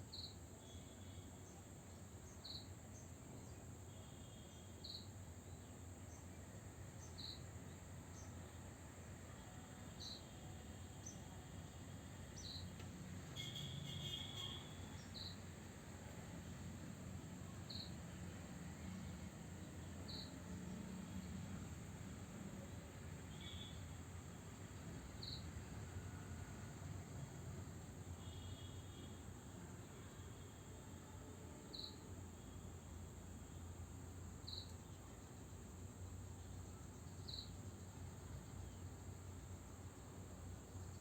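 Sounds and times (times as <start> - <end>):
insect chirps: 0.1 - 8.6, 9.9 - 15.7, 17.5 - 20.5, 22.6 - 24.0, 24.8 - 25.9, 28.2 - 31.1, 31.7 - 41.0.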